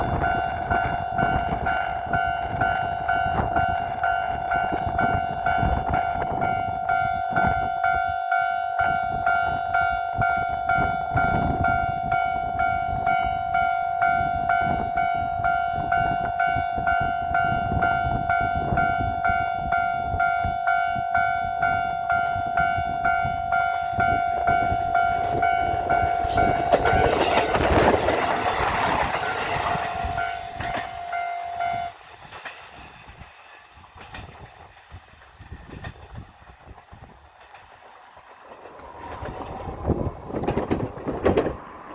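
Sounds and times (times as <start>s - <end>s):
level crossing alarm ringing: 0.0s - 32.2s
train wheels clattering over rail joints: 25.2s - 31.1s, 31.9s - 41.9s.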